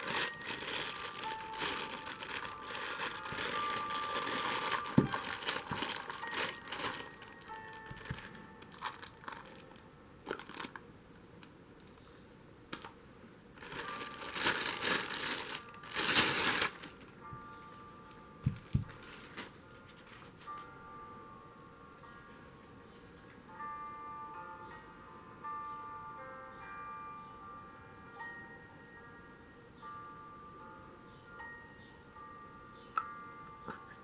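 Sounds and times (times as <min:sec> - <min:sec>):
crinkling and rustling: 0:00.0 - 0:13.0, 0:13.6 - 0:20.7.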